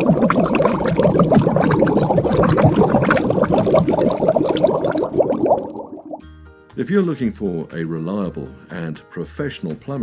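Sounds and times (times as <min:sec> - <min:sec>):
water pouring and gurgling: 0:00.0 - 0:06.2.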